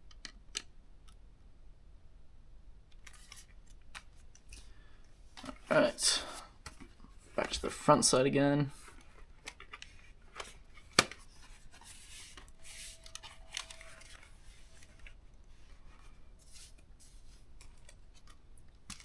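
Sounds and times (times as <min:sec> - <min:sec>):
plastic parts clicking: 0:00.0 - 0:01.2, 0:08.8 - 0:11.6, 0:12.3 - 0:15.2
plastic parts rustling: 0:08.7 - 0:19.0.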